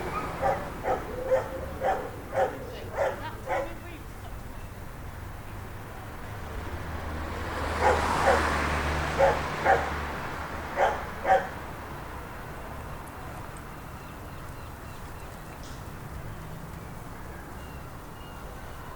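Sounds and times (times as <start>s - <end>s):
dog barking: 0.0s - 3.9s, 7.8s - 10.1s, 10.7s - 11.6s.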